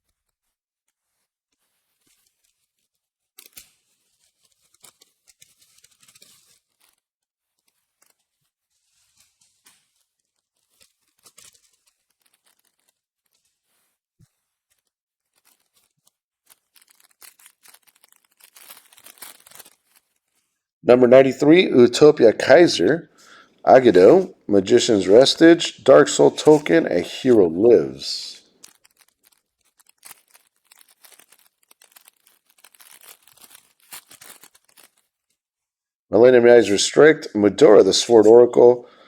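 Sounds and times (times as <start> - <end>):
foil wrappers tearing and crinkling: 3.4 - 13.7, 14.6 - 20.4, 25.0 - 27.7, 28.4 - 35.3.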